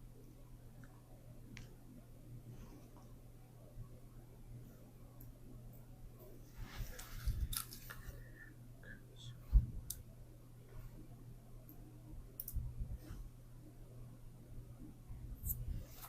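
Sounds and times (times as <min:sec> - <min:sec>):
steady low hum: 0:00.0 - 0:16.0
soft rustles and clicks: 0:05.2 - 0:08.2.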